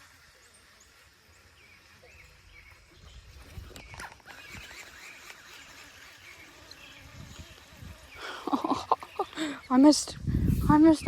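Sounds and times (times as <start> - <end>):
small birds chirping: 0.0 - 11.0
low wind rumble: 6.9 - 11.0.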